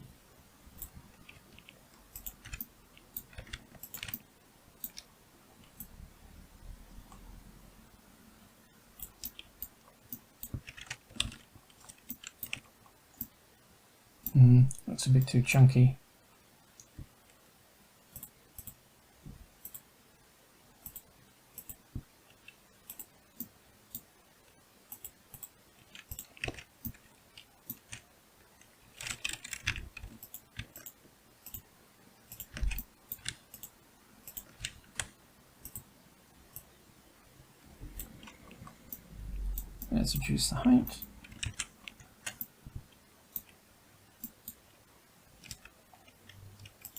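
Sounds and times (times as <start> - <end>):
mouse and keyboard clicks: 0.8 - 4.2, 9.0 - 13.3, 25.0 - 28.0, 28.6 - 31.6, 32.3 - 33.7, 34.3 - 35.9, 40.9 - 43.6, 45.4 - 46.9.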